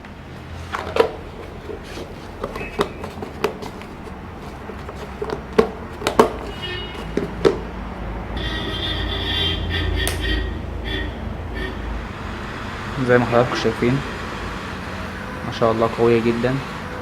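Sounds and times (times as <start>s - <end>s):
handling knocks and clicks: 0.0s - 8.0s.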